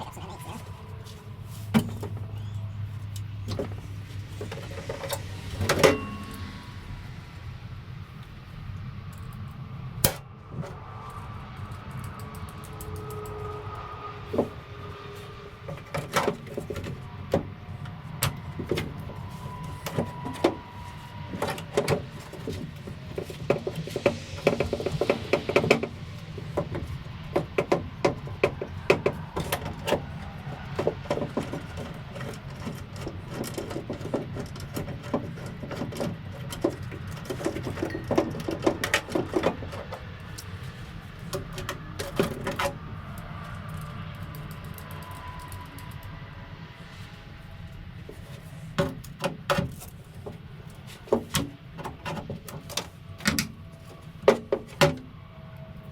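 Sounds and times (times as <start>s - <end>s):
steady low hum: 0.0s - 54.3s
hand tools clinking and knocking: 18.2s - 40.5s.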